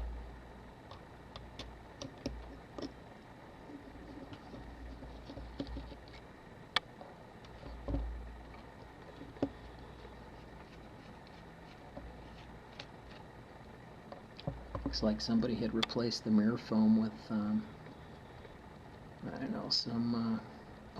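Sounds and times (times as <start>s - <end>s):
camera and tools clicking and knocking: 4.3s - 6.2s, 6.8s - 8.1s.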